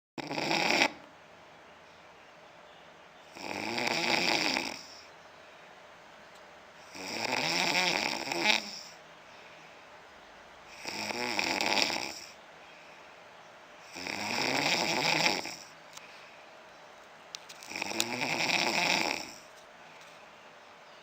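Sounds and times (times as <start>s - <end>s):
man snoring: 0.2s - 1.1s, 3.3s - 5.1s, 6.8s - 9.0s, 10.7s - 12.4s, 13.8s - 15.8s, 17.6s - 19.5s
quiet breathing: 3.2s - 5.4s, 6.8s - 20.7s.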